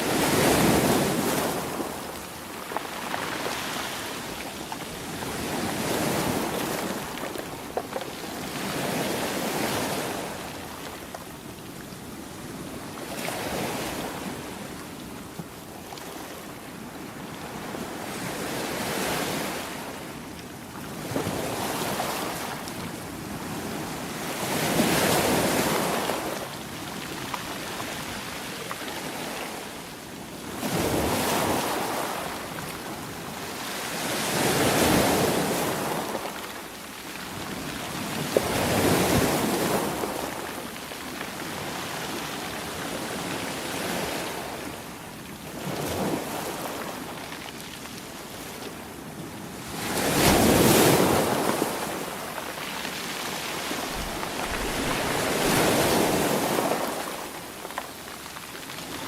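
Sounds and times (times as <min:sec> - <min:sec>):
sea waves breaking: 0:49.6 - 0:59.0.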